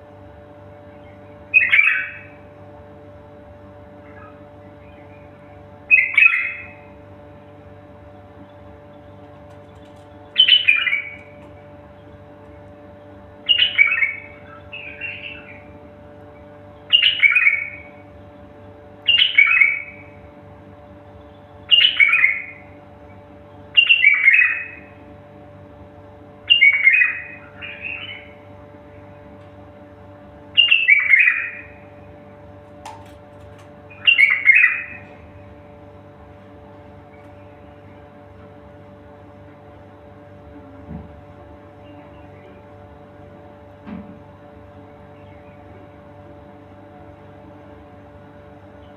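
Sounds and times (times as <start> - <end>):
songbird singing falling phrases: 0.7 - 2.7, 4.0 - 25.0, 26.4 - 38.4, 41.7 - 43.1, 44.7 - 46.2.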